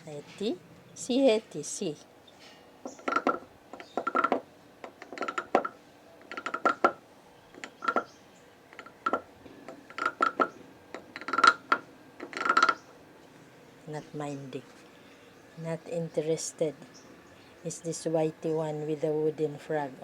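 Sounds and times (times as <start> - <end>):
wooden frog guiro rasps: 2.9 - 4.4, 9.9 - 12.8.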